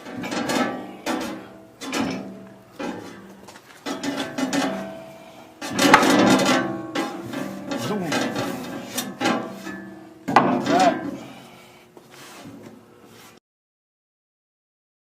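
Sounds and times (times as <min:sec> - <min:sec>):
metal knocks and clanks: 0:00.0 - 0:11.3.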